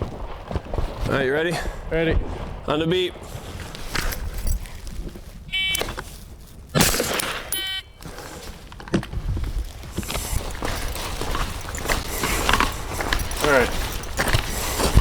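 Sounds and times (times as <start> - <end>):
shot timer beeps: 5.5 - 5.8, 7.5 - 8.0
suppressed rifle shot: 6.8 - 7.5.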